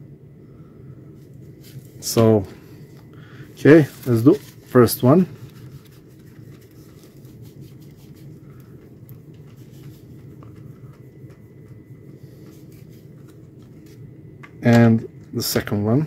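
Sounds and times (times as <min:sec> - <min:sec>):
low steady hum: 0:00.0 - 0:16.0
probe rubbing on paper towel: 0:03.8 - 0:14.0.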